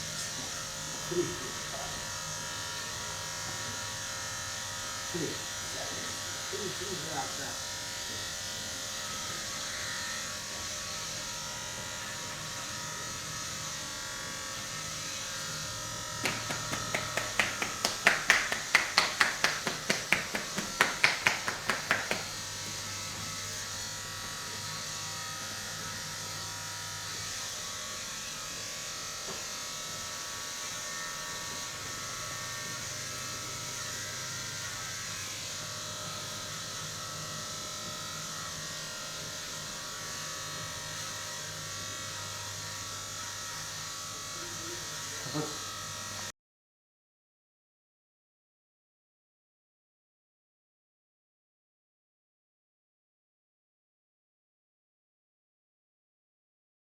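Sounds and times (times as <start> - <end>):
electric massager buzzing: 0.0 - 46.3
rapid rhythmic slaps on body: 16.2 - 22.4.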